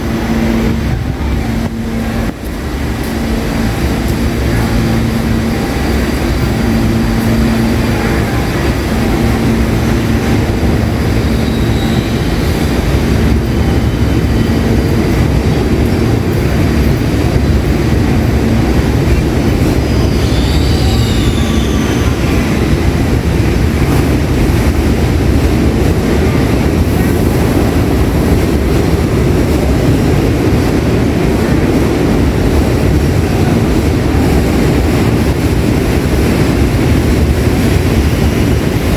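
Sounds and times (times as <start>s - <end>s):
subway train rumbling on rails: 0.0s - 38.9s
high-pitched squeal: 3.6s - 15.8s, 18.4s - 23.3s.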